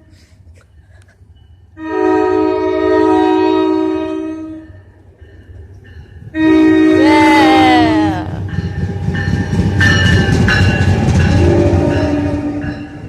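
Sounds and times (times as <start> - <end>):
train air horn blasts: 1.8 - 4.8, 6.3 - 8.4, 11.2 - 13.0.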